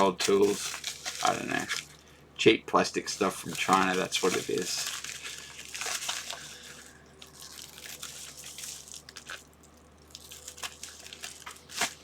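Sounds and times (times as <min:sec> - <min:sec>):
plastic packaging clicks and crinkles: 0:00.0 - 0:02.1, 0:03.1 - 0:12.0
low steady hum: 0:00.0 - 0:12.0.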